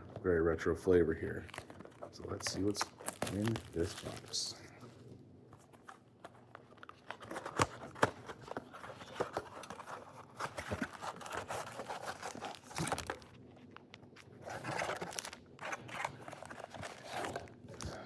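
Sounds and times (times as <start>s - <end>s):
packs crinkling: 1.3s - 4.8s, 5.7s - 18.0s
cardboard tearing: 1.4s - 4.4s, 7.0s - 13.4s, 14.2s - 17.9s.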